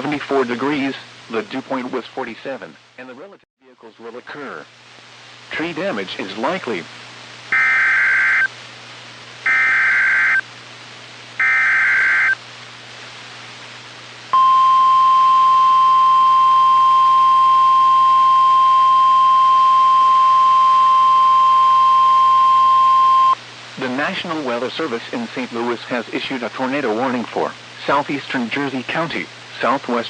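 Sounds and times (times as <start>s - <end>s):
steady warning alarm tone: 7.5s - 8.5s, 9.5s - 10.4s, 11.4s - 12.4s, 14.4s - 23.4s
digital data squawks: 7.6s - 8.5s, 9.5s - 10.4s, 11.4s - 12.4s.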